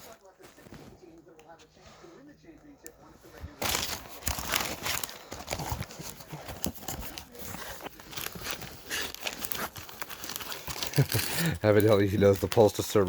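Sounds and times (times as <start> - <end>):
newspaper rustling: 0.0 - 1.2, 3.2 - 13.0
light knocks and crinkles: 0.0 - 2.1, 3.2 - 13.0
cardboard being handled: 3.3 - 13.0.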